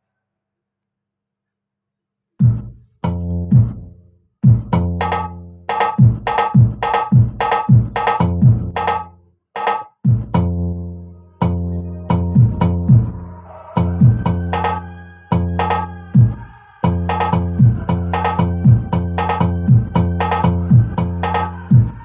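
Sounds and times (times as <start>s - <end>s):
deep bass-like tones: 2.4s - 9.2s, 10.1s - 22.0s
electronic drum pad hits: 4.4s - 10.5s, 13.9s - 22.0s.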